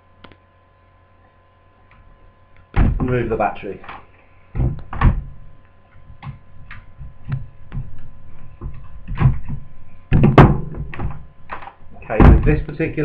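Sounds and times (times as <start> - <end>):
faint steady hum: 0.0 - 13.0
heavier thump: 2.7 - 3.3, 4.5 - 5.5, 8.6 - 11.4, 12.0 - 12.8.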